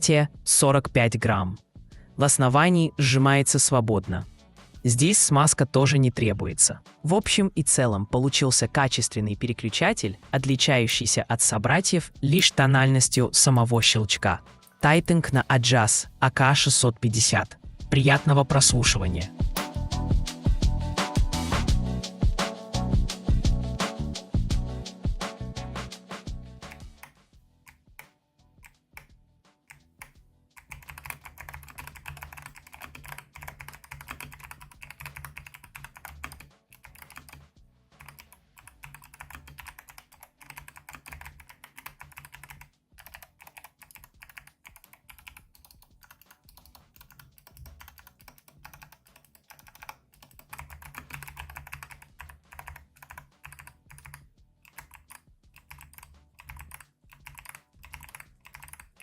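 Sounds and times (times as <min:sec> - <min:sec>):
clicky mechanical keyboard typing: 0:29.7 - 0:37.4, 0:38.0 - 0:59.0.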